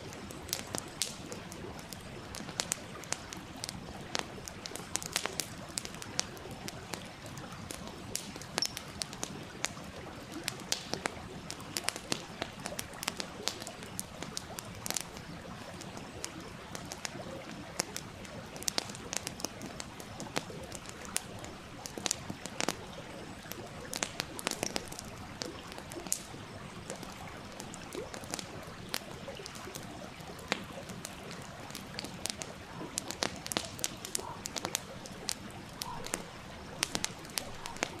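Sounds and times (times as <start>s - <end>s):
wood fire crackling: 0.0s - 38.0s.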